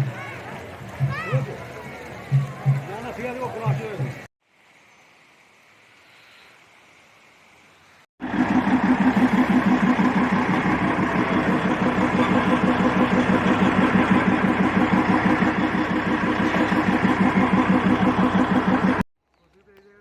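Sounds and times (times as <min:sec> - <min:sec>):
engine running with even throb: 0:08.2 - 0:19.0.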